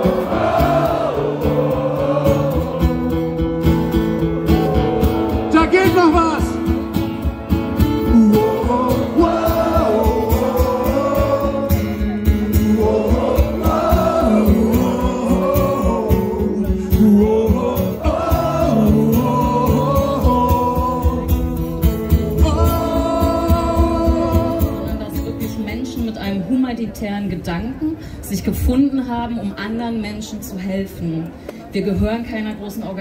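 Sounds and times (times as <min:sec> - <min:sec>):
crowd singing along: 0:00.0 - 0:25.7.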